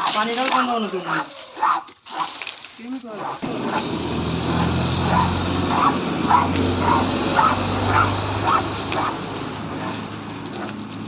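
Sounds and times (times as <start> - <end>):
dog barking: 3.2 - 3.9, 4.5 - 9.2.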